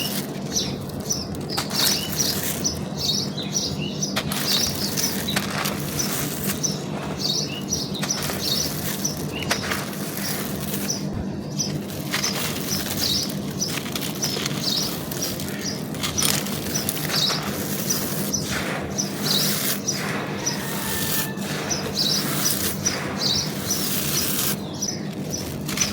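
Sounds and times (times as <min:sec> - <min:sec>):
charcoal and clay being crushed: 0:04.1 - 0:25.9.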